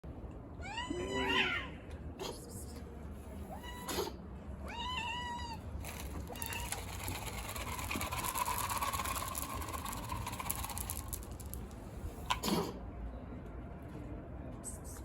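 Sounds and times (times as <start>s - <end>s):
cat meowing: 0.6s - 1.8s, 3.5s - 5.6s.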